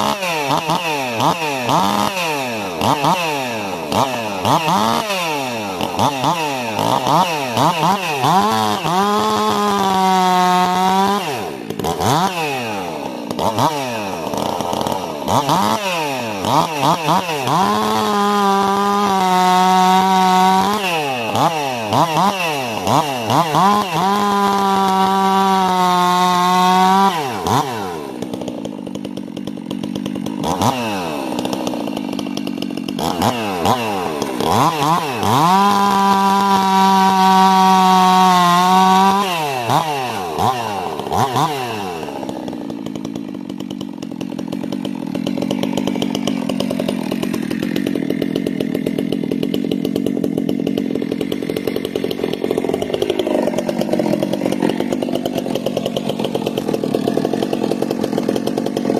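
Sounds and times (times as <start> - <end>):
chainsaw revving and idling: 0.0 - 58.9.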